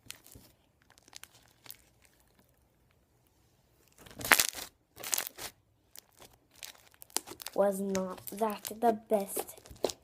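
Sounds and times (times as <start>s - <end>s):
slime crunching by hand: 0.0s - 3.0s, 3.9s - 10.0s.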